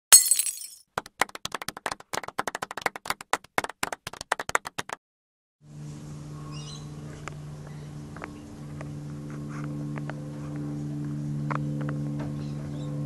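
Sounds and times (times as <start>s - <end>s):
steady low hum: 5.6s - 13.0s.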